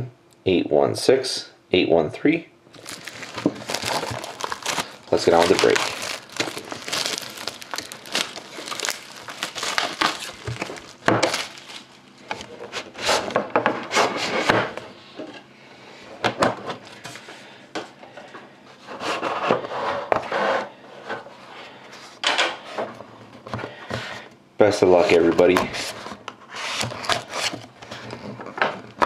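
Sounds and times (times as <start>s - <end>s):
packaging rustling and crinkling: 2.7s - 13.4s, 26.7s - 28.2s.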